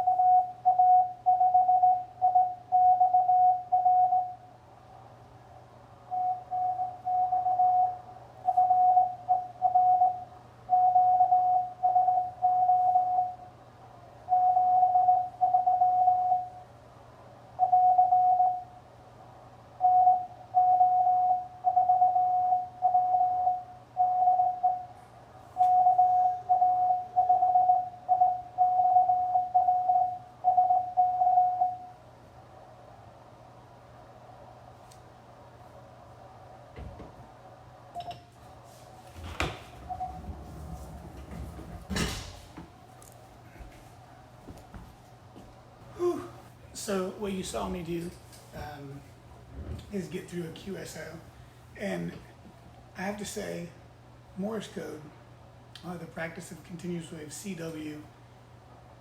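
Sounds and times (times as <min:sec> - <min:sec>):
morse code beeps: 0:00.0 - 0:04.4, 0:06.1 - 0:13.4, 0:14.3 - 0:16.6, 0:17.6 - 0:18.7, 0:19.8 - 0:24.9, 0:25.6 - 0:32.0, 0:39.9 - 0:40.2
faint low hum: 0:00.0 - 0:59.0.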